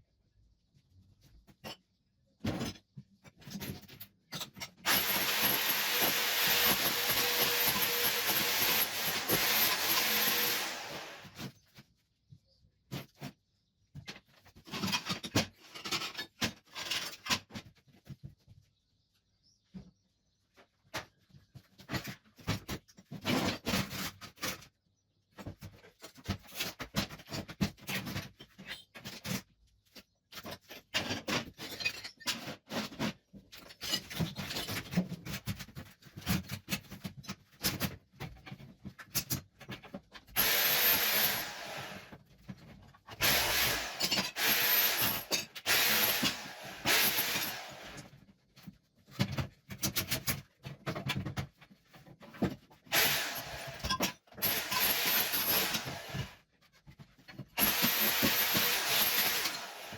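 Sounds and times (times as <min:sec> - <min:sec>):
tiles chipping and cracking: 0:03.4 - 0:11.6, 0:25.4 - 0:41.4, 0:42.2 - 0:59.9
power tool whining: 0:04.8 - 0:11.4, 0:40.4 - 0:42.2, 0:43.2 - 0:48.0, 0:52.9 - 0:56.4, 0:57.6 - 0:59.9.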